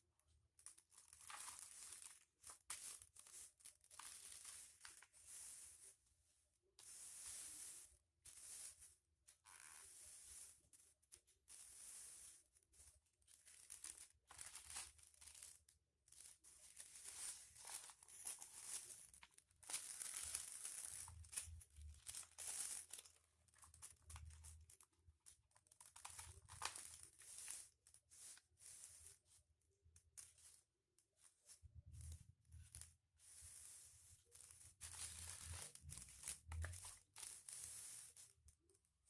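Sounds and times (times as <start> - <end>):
foil paper crinkling: 0.6 - 5.1, 13.3 - 27.7, 34.4 - 38.4.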